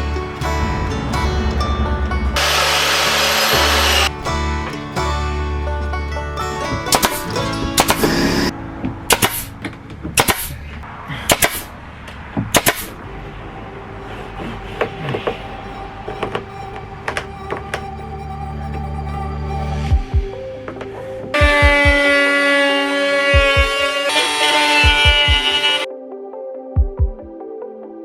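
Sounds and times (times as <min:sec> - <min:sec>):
background music with bass line: 0:00.0 - 0:10.7, 0:15.0 - 0:22.3, 0:23.3 - 0:27.8
nail gun firing into boards: 0:09.1 - 0:09.5, 0:10.2 - 0:10.5, 0:11.3 - 0:11.6, 0:12.6 - 0:12.9.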